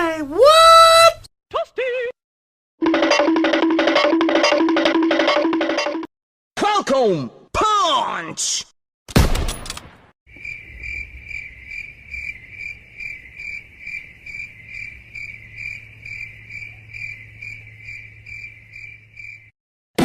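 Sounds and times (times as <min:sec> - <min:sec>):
crickets chirping: 0:10.3 - 0:19.5.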